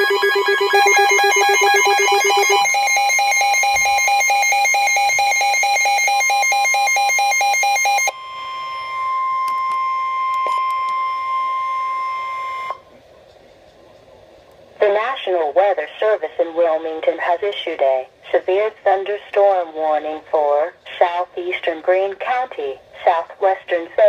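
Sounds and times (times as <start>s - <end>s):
electronic alarm beeps: 0.0s - 12.8s.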